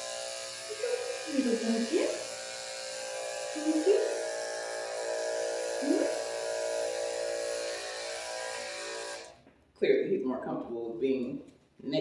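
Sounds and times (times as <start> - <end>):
electric clippers buzzing: 0.0 - 9.4.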